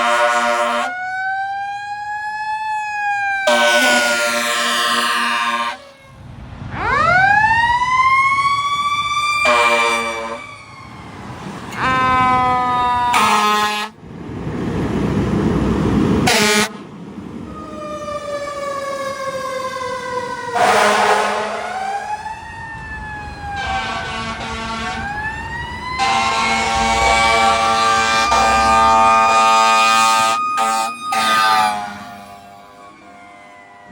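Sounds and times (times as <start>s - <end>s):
air horn blasts: 0.0s - 1.0s, 3.5s - 6.1s, 9.4s - 10.5s, 11.7s - 14.0s, 16.2s - 16.8s, 20.5s - 21.8s, 23.5s - 32.3s
siren wailing: 0.0s - 13.9s, 17.3s - 33.9s.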